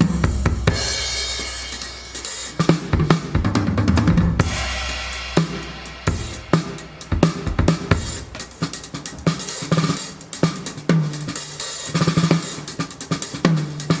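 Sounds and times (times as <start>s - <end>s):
drum kit playing a groove: 0.0s - 14.0s
low drum hits ringing: 4.0s - 10.0s.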